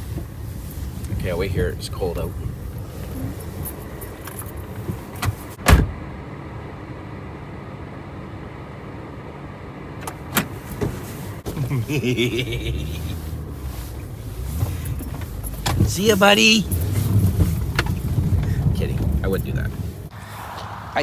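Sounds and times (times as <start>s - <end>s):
car cabin low hum: 0.0s - 20.3s
car door thump: 4.9s - 6.0s
outside air noise: 16.4s - 21.0s.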